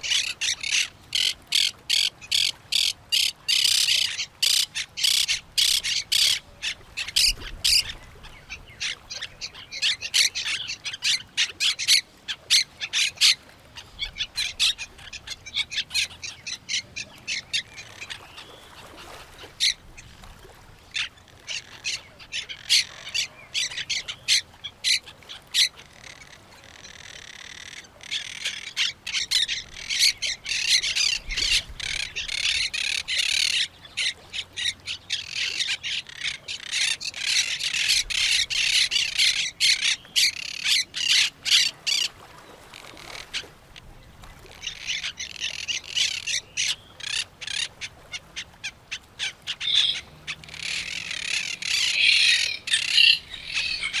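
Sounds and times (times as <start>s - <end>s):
parrots squawking: 49.2s - 54.0s.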